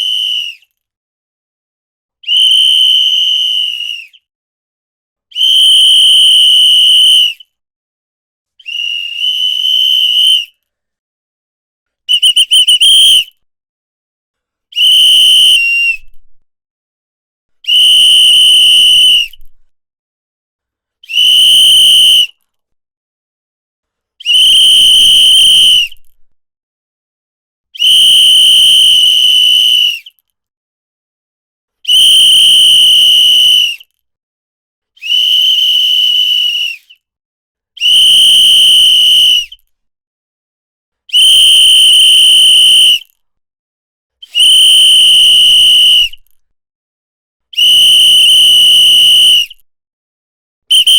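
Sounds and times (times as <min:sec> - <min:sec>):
whistle long blasts: 0:02.2 - 0:04.2, 0:05.4 - 0:07.4, 0:08.6 - 0:10.5, 0:12.1 - 0:13.3, 0:14.8 - 0:16.2, 0:17.6 - 0:19.5, 0:21.1 - 0:22.4, 0:24.2 - 0:26.0, 0:27.8 - 0:30.1, 0:31.9 - 0:33.8, 0:35.0 - 0:36.8, 0:37.8 - 0:39.6, 0:41.1 - 0:43.1, 0:44.2 - 0:46.2, 0:47.6 - 0:49.6.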